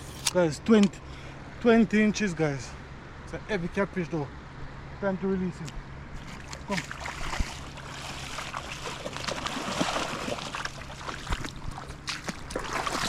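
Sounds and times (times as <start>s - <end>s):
water sloshing and trickling: 6.1s - 13.0s.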